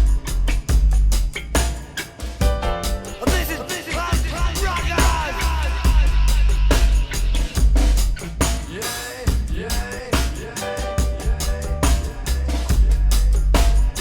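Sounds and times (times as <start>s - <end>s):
deep bass: 0.0s - 1.6s, 4.2s - 8.6s, 9.3s - 10.2s, 11.0s - 14.0s
drum kit beating hard: 0.0s - 14.0s.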